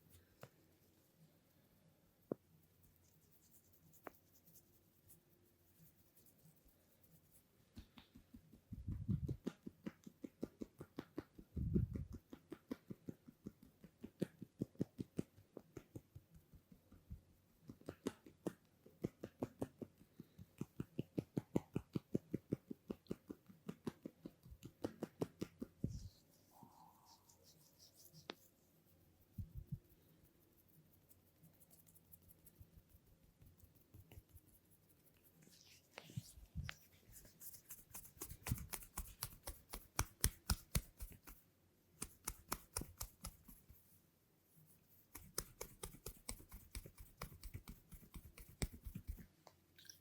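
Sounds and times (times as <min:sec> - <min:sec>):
hands tapping in massage: 0:07.6 - 0:19.9, 0:38.0 - 0:41.4, 0:42.0 - 0:43.8, 0:45.1 - 0:49.3.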